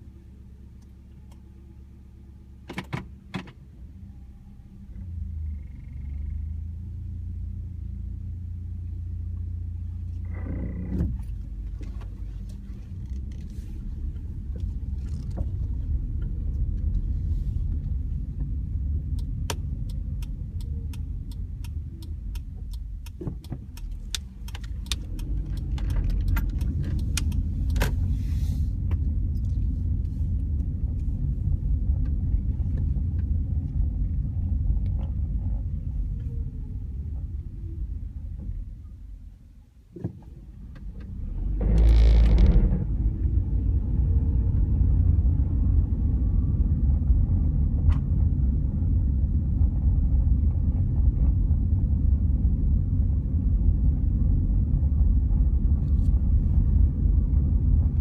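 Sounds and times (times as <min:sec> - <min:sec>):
car drivetrain low rumble: 0:00.0 - 0:58.0
sharp clicks: 0:19.1 - 0:28.0.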